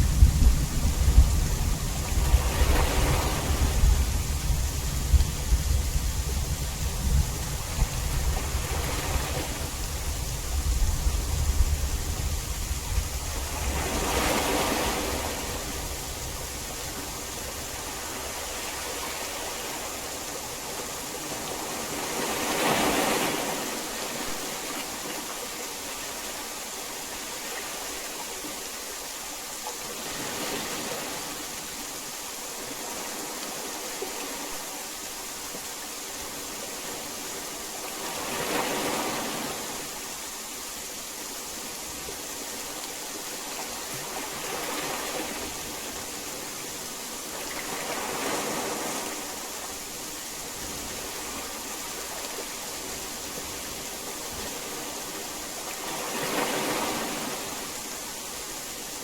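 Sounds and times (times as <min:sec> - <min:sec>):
heavy rain hissing: 0:00.0 - 0:24.6.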